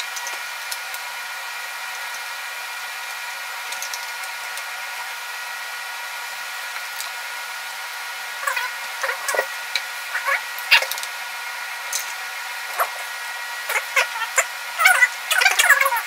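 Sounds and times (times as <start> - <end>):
fan-like hiss: 0.0 - 16.0.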